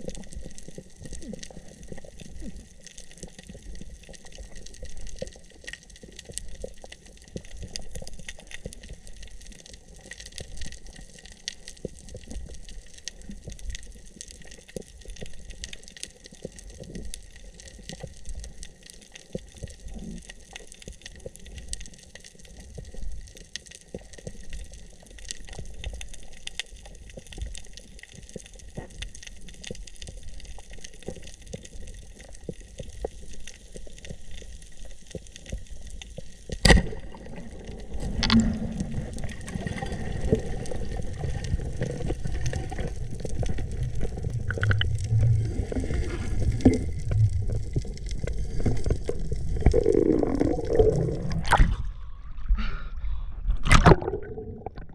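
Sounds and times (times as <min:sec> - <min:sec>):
low churning water: 0:00.0 - 0:54.9
water gurgling and sloshing: 0:36.6 - 0:54.9.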